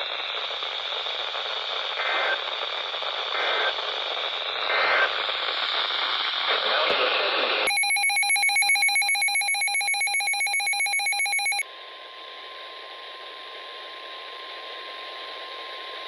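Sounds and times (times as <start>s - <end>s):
radio hiss: 1.3s - 7.6s
rapid pulsing electronic beep: 7.7s - 11.6s
steady alarm tone: 7.7s - 11.6s.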